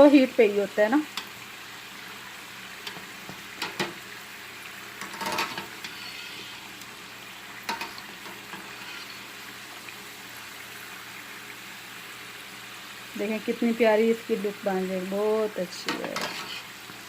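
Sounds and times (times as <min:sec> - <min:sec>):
food frying in oil: 0:00.0 - 0:17.0
utensil scraping a pan: 0:05.0 - 0:06.9, 0:07.6 - 0:09.5, 0:15.8 - 0:17.0.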